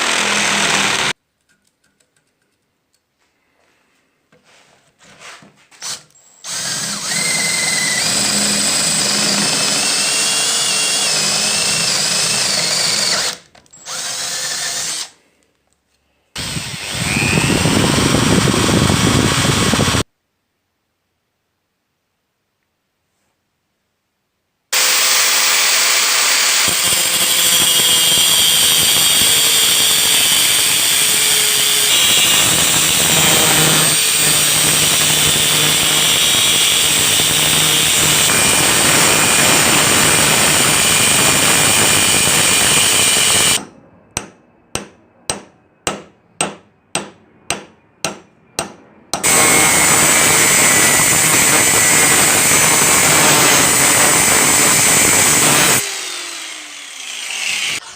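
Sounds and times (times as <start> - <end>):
power tool running on steel: 0.0 - 1.2, 16.4 - 20.0, 24.8 - 43.6, 49.2 - 57.9.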